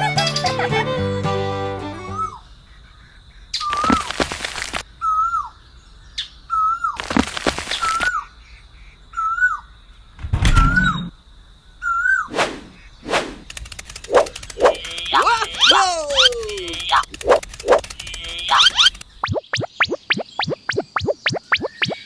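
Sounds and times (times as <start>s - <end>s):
rustling noise bursts: 3.7s - 4.8s, 7.0s - 8.1s, 12.4s - 19.3s
bird chirping: 11.8s - 22.0s
sharp click: 13.2s - 19.7s.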